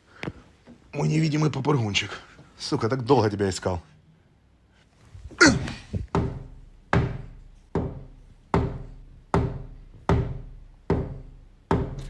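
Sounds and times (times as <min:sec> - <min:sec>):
heavy knocking on a door: 0:05.7 - 0:12.0.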